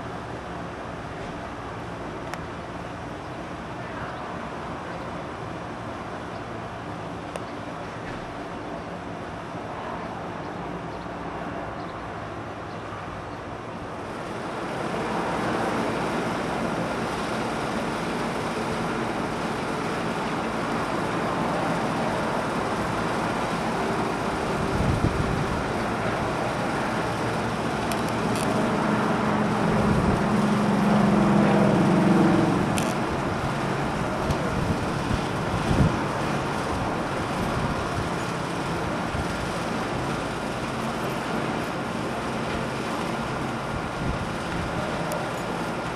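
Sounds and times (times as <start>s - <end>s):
low engine-like hum: 0.0s - 45.9s
wind blowing: 13.8s - 45.9s.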